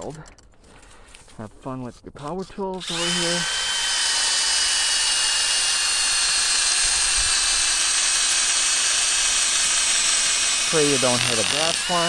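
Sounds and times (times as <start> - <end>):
power drill boring into frozen ground: 2.7 - 12.0.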